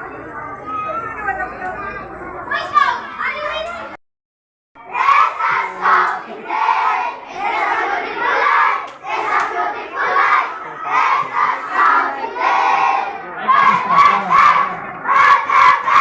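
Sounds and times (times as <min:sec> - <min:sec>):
crowd of young voices chanting: 0:04.9 - 0:16.0.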